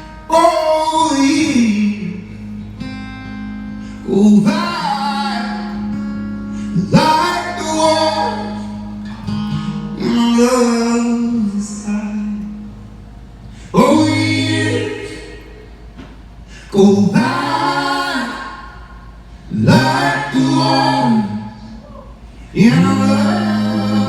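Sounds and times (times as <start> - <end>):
acoustic guitar chords: 0.0 - 24.0
person singing: 19.5 - 24.0.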